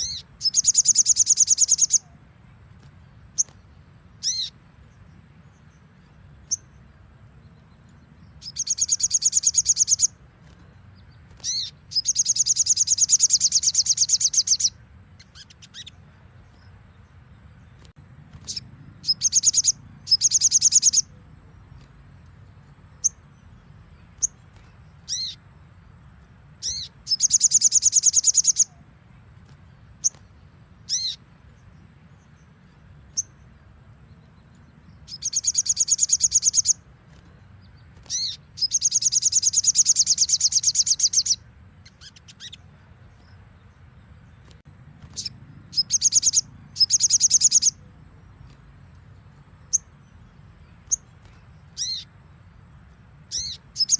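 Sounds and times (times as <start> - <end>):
bird sharp chirps: 0.0 - 2.2, 4.2 - 4.6, 7.9 - 16.8, 17.7 - 21.2, 22.9 - 25.4, 26.6 - 28.8, 29.4 - 31.2, 34.2 - 43.4, 44.3 - 48.6, 49.6 - 52.2, 53.3 - 53.9.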